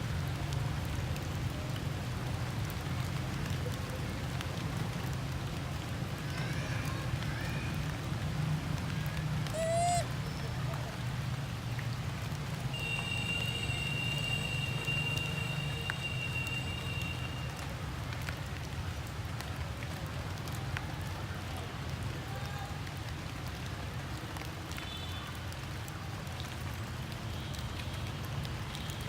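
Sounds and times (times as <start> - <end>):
rain pattering: 0.0 - 29.0
water drips: 0.0 - 29.0
short bending call: 9.5 - 10.1.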